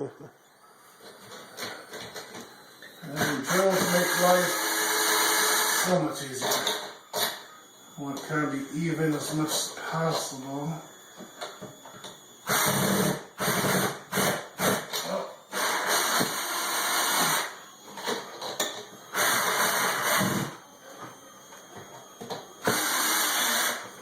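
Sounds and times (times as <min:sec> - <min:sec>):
power drill driving screws: 0:03.1 - 0:07.4, 0:12.4 - 0:17.6, 0:19.1 - 0:20.5, 0:22.6 - 0:23.9.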